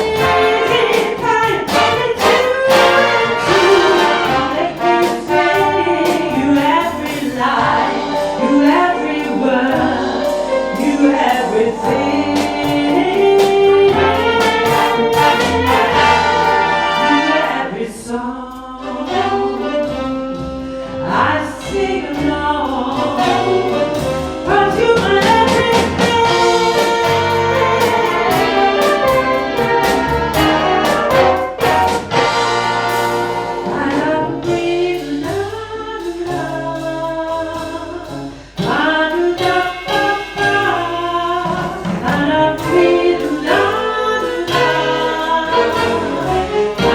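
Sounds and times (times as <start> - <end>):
big band brass section: 0.0 - 9.2, 13.3 - 17.8, 23.2 - 34.6, 44.4 - 46.9
bass: 0.0 - 46.9
drums: 0.0 - 46.9.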